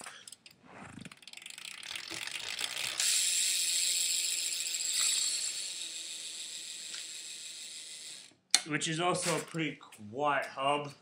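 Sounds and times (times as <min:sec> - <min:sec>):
bicycle freewheel hub ticking: 0:00.0 - 0:08.4.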